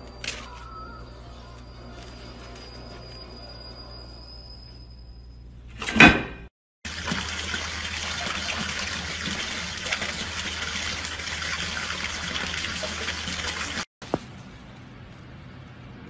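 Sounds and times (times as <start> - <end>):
running water rushing: 6.9 - 13.8.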